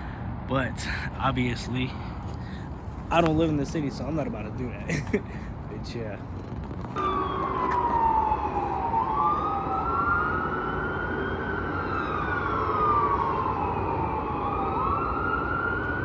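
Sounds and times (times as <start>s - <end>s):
low traffic rumble: 0.0s - 16.0s
emergency siren wailing: 6.6s - 16.0s
second siren wailing: 7.0s - 16.0s.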